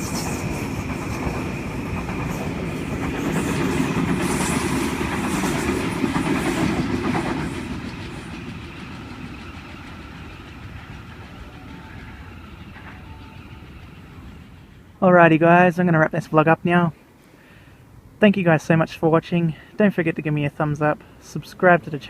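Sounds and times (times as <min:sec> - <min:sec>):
train wheels rumbling on rails: 0:00.0 - 0:15.7.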